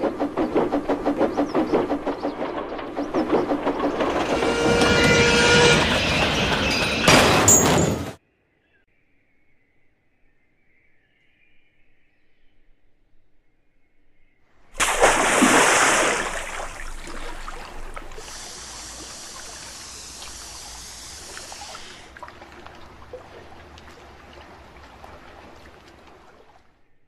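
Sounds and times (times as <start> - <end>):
loud water splash: 14.8 - 26.6
trickling water: 14.8 - 26.8.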